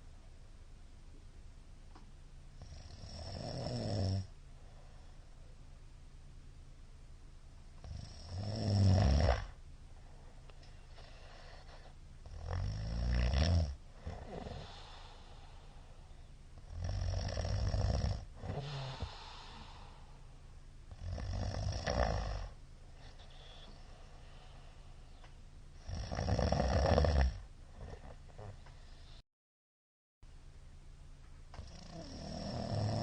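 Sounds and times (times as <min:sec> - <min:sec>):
low room hiss: 0:00.0 - 0:29.2, 0:30.2 - 0:33.0
man snoring loudly: 0:02.6 - 0:04.3, 0:07.8 - 0:09.6, 0:12.3 - 0:15.1, 0:16.7 - 0:19.8, 0:20.9 - 0:22.6, 0:25.8 - 0:28.1, 0:31.6 - 0:33.0.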